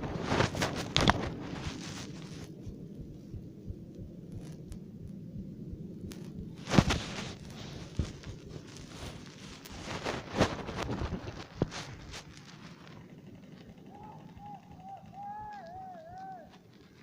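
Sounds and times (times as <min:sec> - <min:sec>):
close rustling and scraping: 0:00.0 - 0:03.4, 0:06.1 - 0:13.9, 0:15.5 - 0:17.0
low wind rumble: 0:00.0 - 0:17.0.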